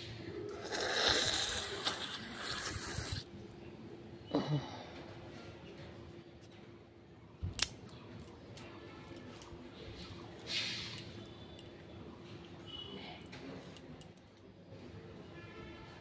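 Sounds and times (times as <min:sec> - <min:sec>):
sniff through the nose: 0:00.5 - 0:03.2.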